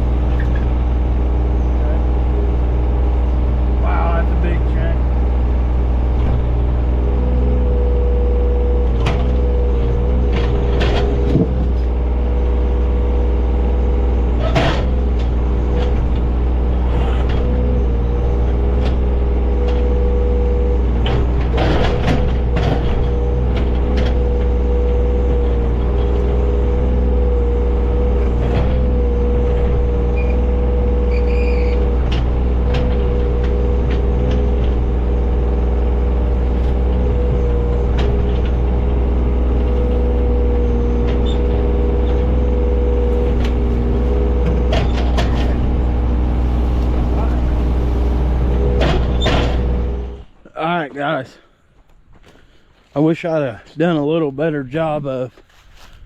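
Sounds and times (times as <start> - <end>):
excavator diesel engine running: 0.0 - 51.2
steady whine: 0.0 - 51.3
metal knocks and clanks: 8.9 - 12.0, 20.9 - 26.4, 36.4 - 50.2.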